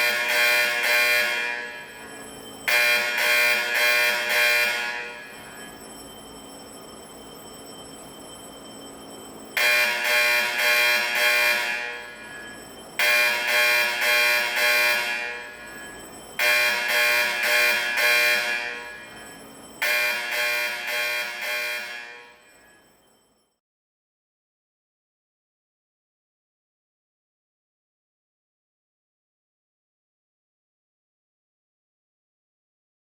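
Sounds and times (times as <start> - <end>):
fire alarm horn blasts: 0.0 - 23.6.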